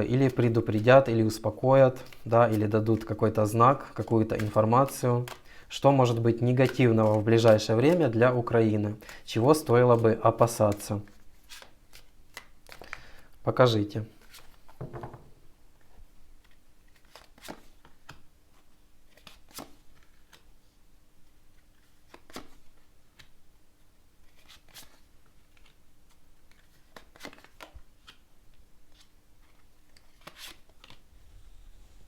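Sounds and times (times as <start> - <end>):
cards being handled: 0.2 - 13.2, 14.1 - 15.3, 16.4 - 20.6, 21.5 - 23.4, 24.2 - 31.1.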